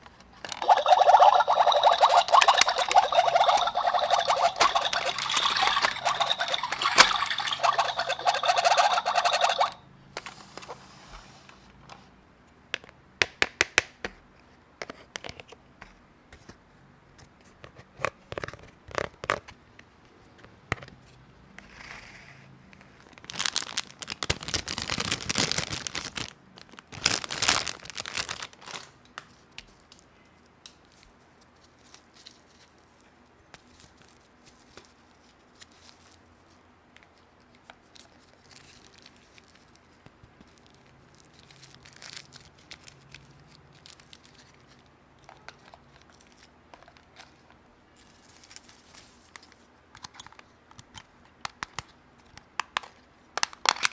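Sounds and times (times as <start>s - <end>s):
packaging tearing and crinkling: 23.0s - 29.0s, 40.6s - 44.4s.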